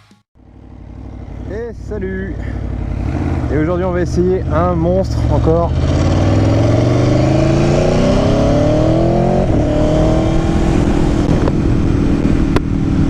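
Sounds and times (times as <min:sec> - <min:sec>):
motorcycle engine pulling hard: 0:00.4 - 0:13.0.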